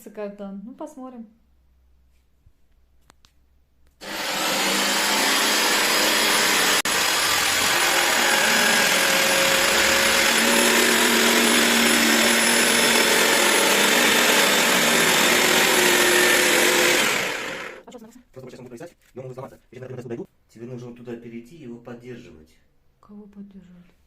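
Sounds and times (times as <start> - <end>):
jigsaw cutting drywall: 4.0 - 17.8.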